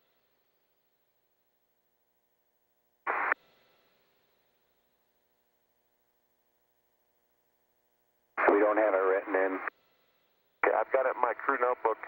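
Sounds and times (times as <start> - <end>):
faint steady hum: 0.0 - 12.0
radio static burst: 8.4 - 9.7.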